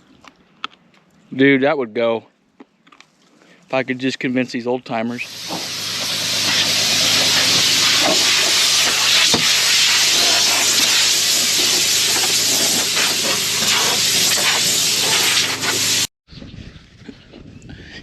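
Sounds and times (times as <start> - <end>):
compressed air hissing: 5.2 - 16.1.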